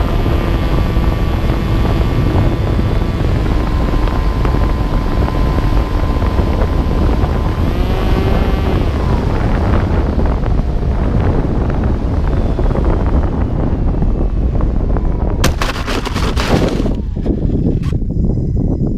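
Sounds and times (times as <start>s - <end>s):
electric motor and propeller whining: 0.0s - 18.6s
wind buffeting microphone: 0.0s - 18.9s
sharp cracks: 15.4s - 17.0s.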